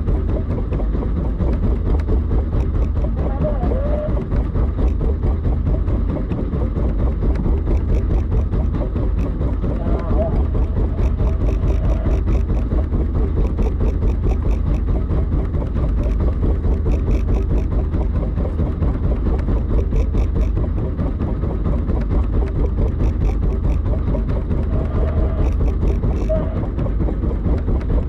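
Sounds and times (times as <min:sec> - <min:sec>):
boat engine low drone: 0:00.0 - 0:28.0
fast regular ticking: 0:00.1 - 0:28.0.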